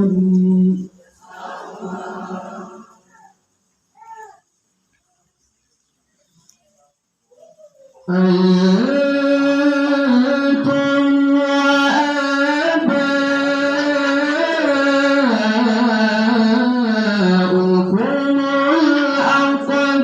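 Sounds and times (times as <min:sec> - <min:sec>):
person chanting melodic recitation: 0:00.0 - 0:02.9, 0:08.0 - 0:20.0.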